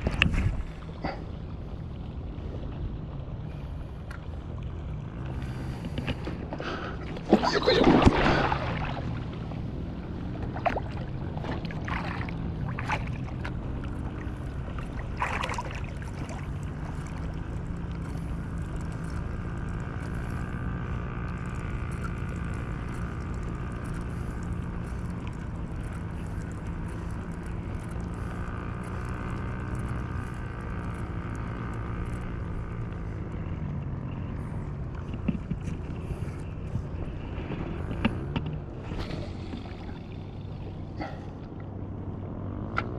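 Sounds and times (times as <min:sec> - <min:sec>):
boat engine humming: 0:00.0 - 0:42.9
water splashing: 0:03.9 - 0:28.6, 0:38.8 - 0:41.6.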